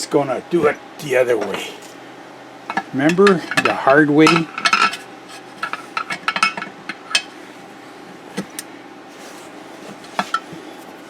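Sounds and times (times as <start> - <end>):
metal hand tools clinking: 3.1 - 5.0.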